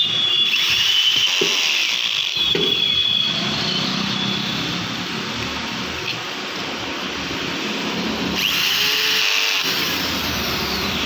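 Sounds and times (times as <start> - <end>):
power tool whirring and ratcheting: 0.2 - 3.8, 7.8 - 11.0.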